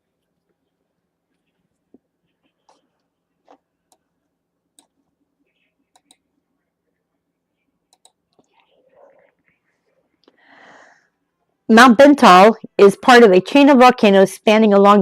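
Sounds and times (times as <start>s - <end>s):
computer mouse clicks: 5.9s - 6.2s, 7.9s - 8.6s.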